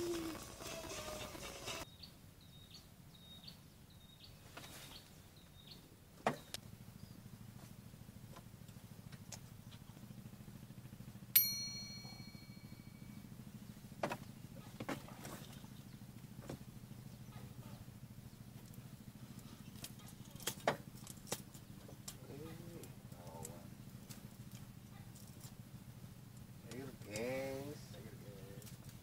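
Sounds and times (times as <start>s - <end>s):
low steady hum: 5.0s - 29.0s
metallic ding: 11.4s - 13.2s.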